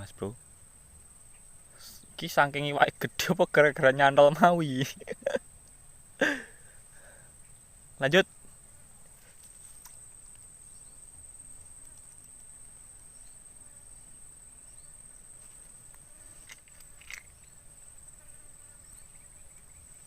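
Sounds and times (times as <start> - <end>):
insects droning: 0.0 - 20.0
faint clicks: 11.8 - 12.6.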